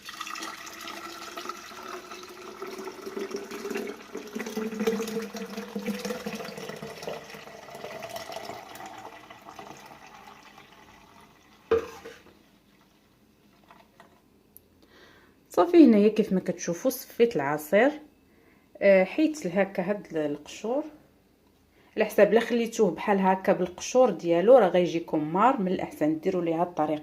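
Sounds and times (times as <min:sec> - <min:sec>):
liquid pouring into container: 0:00.0 - 0:14.2.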